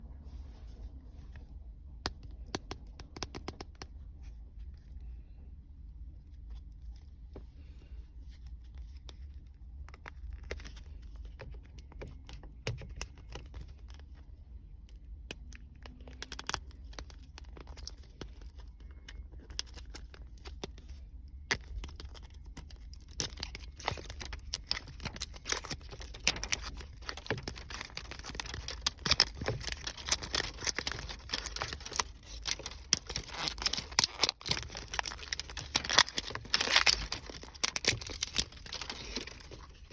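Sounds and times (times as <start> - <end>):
crackle foam crackling: 12.9 - 39.9.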